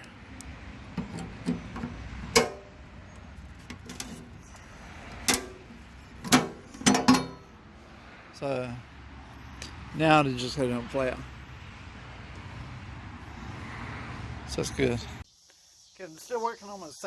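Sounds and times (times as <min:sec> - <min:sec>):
metal parts knocking and clanking: 0:00.9 - 0:02.7, 0:05.2 - 0:07.4.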